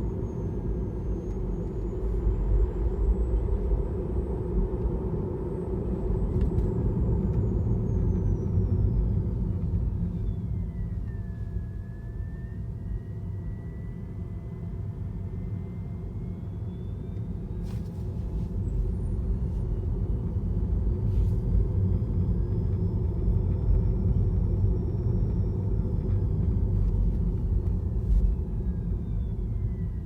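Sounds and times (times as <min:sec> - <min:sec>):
road and tyre noise: 0:00.0 - 0:11.0, 0:17.2 - 0:30.0.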